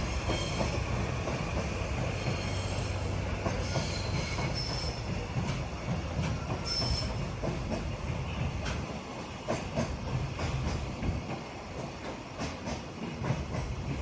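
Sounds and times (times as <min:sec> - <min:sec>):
freight train rolling on rails: 0:00.0 - 0:14.0
high-pitched wheel squeal: 0:02.2 - 0:05.0.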